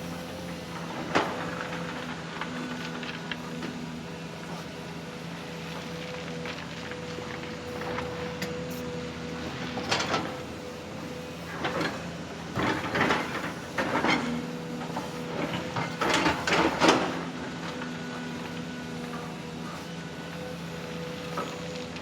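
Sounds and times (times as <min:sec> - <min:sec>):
excavator machine hum: 0:00.0 - 0:22.0.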